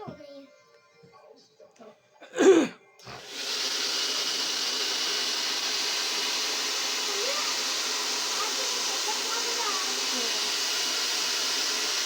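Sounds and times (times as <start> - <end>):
person crying out: 2.4 - 2.7
hair dryer running: 3.0 - 12.0.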